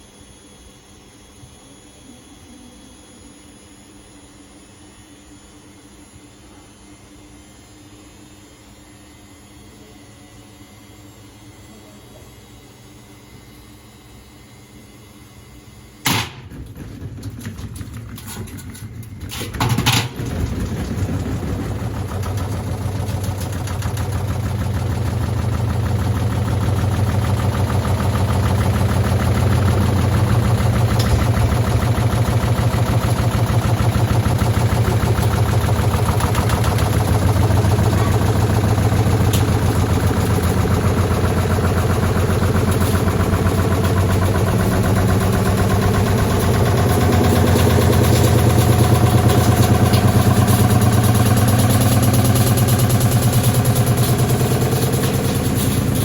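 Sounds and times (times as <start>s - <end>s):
washing machine spinning: 16.1s - 56.0s.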